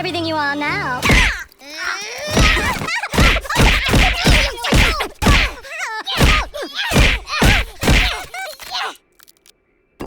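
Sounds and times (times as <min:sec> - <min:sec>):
cartoon hit: 0:01.0 - 0:01.4
cartoon thumps and whacks: 0:01.0 - 0:01.5, 0:02.3 - 0:05.6, 0:06.2 - 0:08.4.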